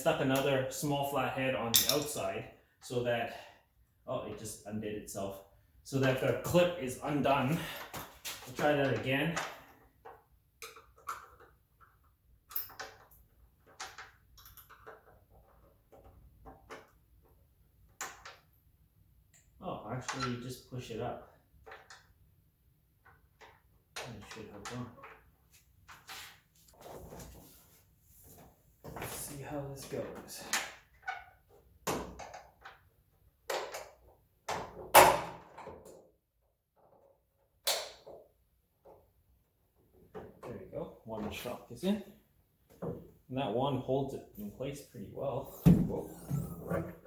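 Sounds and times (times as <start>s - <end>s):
sharp metal knocks and clunks: 1.7s - 2.2s.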